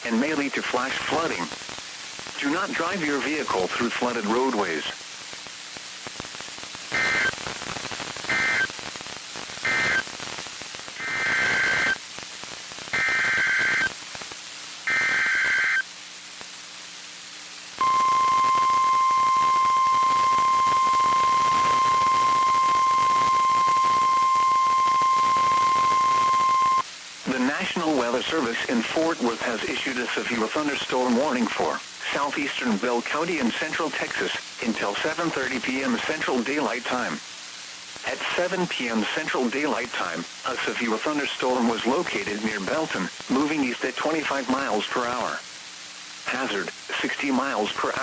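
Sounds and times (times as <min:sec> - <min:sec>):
radio hiss: 0:00.0 - 0:48.0
buzzy data bursts: 0:06.9 - 0:12.1, 0:12.8 - 0:14.0, 0:14.8 - 0:15.8, 0:17.8 - 0:26.8
steady warning alarm tone: 0:07.0 - 0:07.3, 0:08.3 - 0:08.7, 0:09.7 - 0:10.0, 0:11.0 - 0:12.0, 0:13.0 - 0:13.9, 0:14.9 - 0:15.8, 0:17.8 - 0:26.8.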